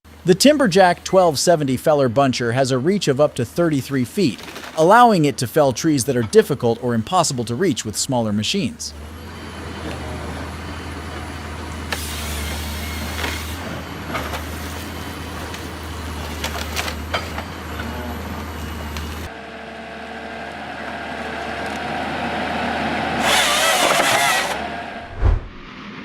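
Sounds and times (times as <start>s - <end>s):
heavy machine engine running: 8.8s - 25.8s
machine noise: 8.9s - 26.0s.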